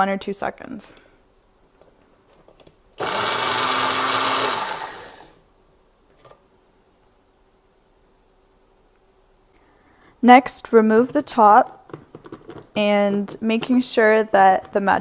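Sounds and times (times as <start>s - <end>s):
blender motor whirring: 3.0s - 5.4s.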